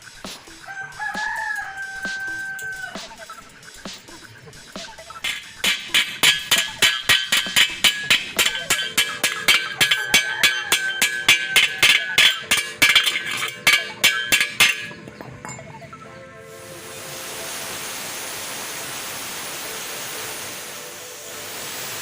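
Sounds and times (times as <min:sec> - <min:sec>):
hammer striking steel tubing: 0:05.2 - 0:15.7.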